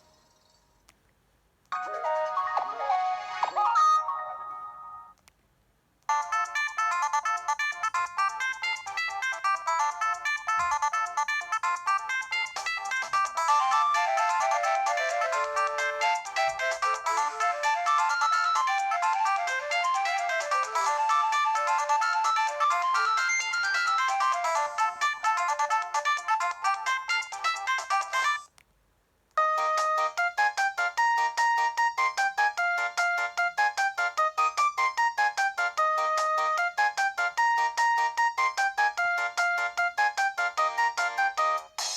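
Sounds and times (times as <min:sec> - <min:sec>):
electronic ringtone melody: 0:01.8 - 0:05.2, 0:06.1 - 0:28.5, 0:29.4 - 0:33.5
ringtone held notes: 0:06.1 - 0:28.5.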